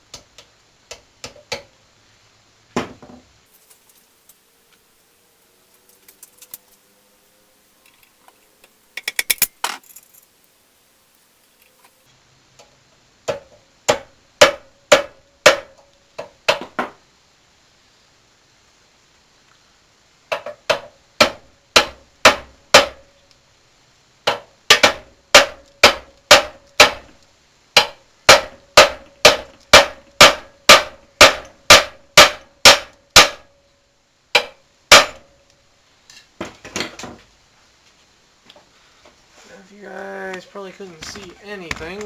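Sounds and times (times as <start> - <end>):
hammer striking steel: 13.3 - 15.8, 20.7 - 23.0, 24.3 - 27.1, 27.8 - 33.5, 34.4 - 35.3.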